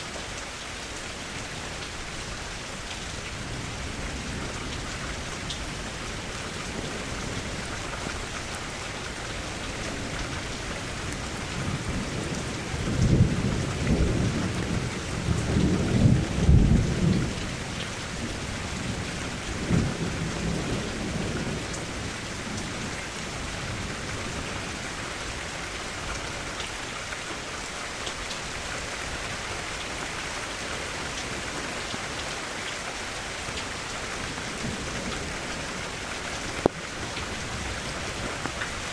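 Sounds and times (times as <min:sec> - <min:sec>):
heavy rain: 0:00.0 - 0:38.9
rolling thunder: 0:11.6 - 0:22.9.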